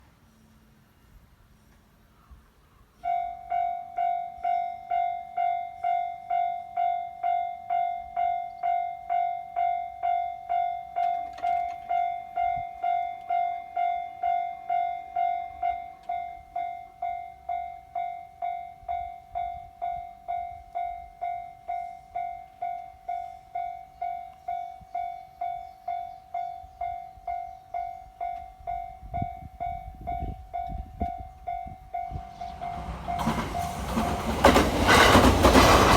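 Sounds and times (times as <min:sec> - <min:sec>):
level crossing warning bell: 0:03.0 - 0:35.9
approaching train rumble: 0:18.8 - 0:35.9.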